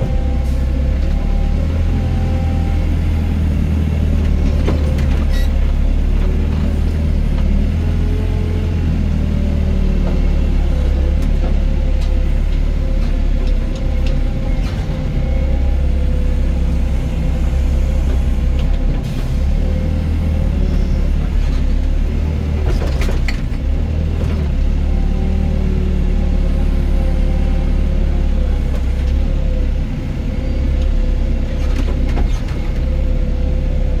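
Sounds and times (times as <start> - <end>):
excavator engine rumbling: 0.0 - 34.0.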